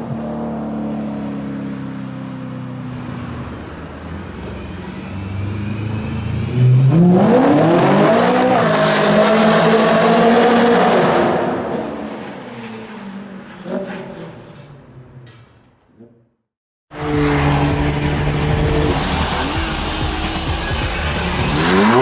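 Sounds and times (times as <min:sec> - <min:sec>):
car engine revving: 0:02.9 - 0:12.1, 0:16.9 - 0:22.0.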